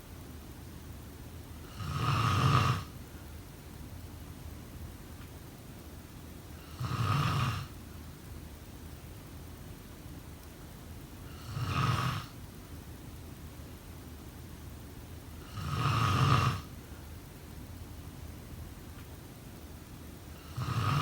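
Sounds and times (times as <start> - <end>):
person snoring: 1.6 - 2.9, 6.7 - 7.7, 15.4 - 16.7, 20.4 - 21.0.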